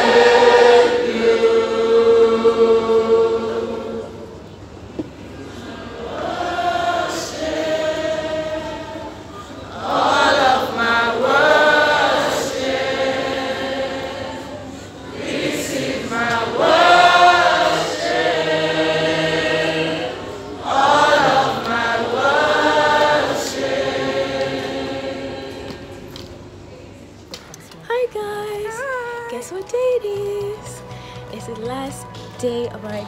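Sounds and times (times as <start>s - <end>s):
choir singing gospel: 0.0s - 26.4s.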